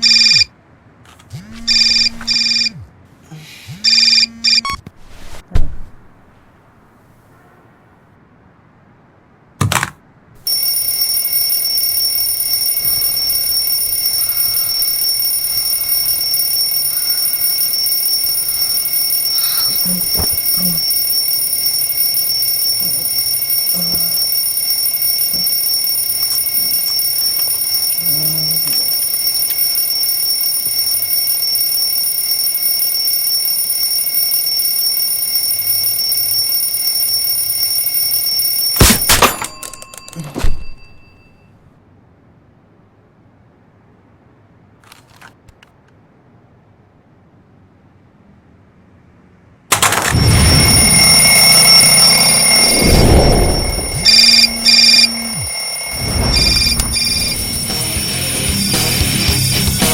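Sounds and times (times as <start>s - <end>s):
electronic alarm clock tone: 0.0s - 0.5s, 1.6s - 2.8s, 3.8s - 4.8s, 10.5s - 41.5s, 49.7s - 59.9s.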